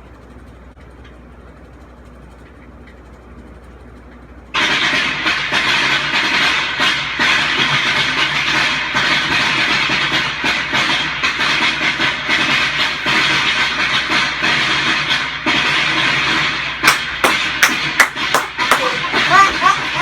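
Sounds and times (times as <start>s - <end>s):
firecrackers crackling: 4.6s - 20.0s.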